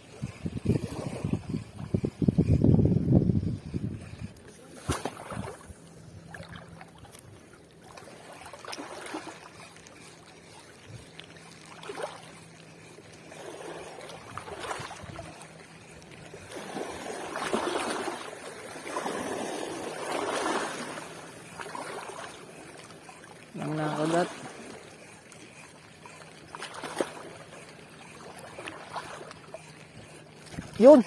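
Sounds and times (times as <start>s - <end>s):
seawater washing over rocks: 13.4s - 25.2s.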